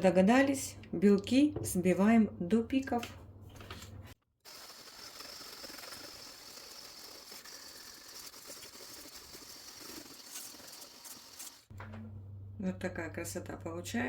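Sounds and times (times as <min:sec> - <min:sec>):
electric mixer whirring: 0:04.5 - 0:11.7.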